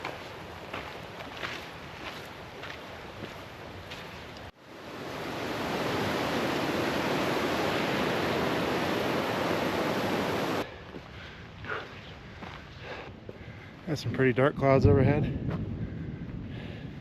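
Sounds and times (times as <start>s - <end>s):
stream water rushing: 2.3s - 10.6s.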